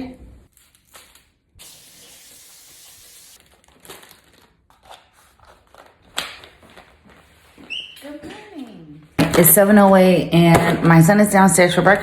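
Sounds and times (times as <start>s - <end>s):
plastic packaging crinkling: 3.4s - 7.4s.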